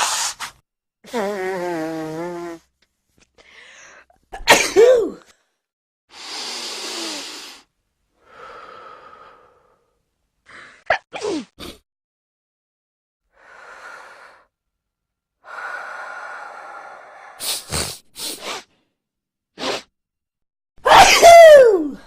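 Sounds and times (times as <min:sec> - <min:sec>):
person sneezing: 0:04.4 - 0:05.3, 0:10.9 - 0:11.8, 0:17.4 - 0:18.7, 0:19.6 - 0:19.9, 0:20.8 - 0:21.7
breathy exhales: 0:06.1 - 0:10.8, 0:15.4 - 0:18.7.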